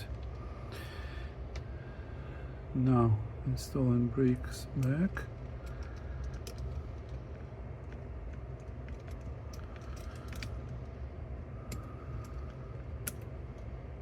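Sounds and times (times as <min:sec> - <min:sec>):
steady low hum: 0:00.0 - 0:14.0
small parts clicking: 0:04.8 - 0:10.9.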